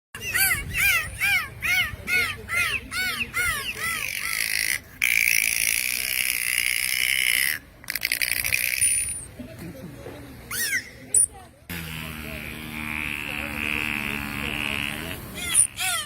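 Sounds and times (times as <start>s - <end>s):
dolphin squeal: 0.2s - 4.8s, 10.5s - 11.1s, 15.3s - 16.0s
dolphin whistles: 10.5s - 11.2s.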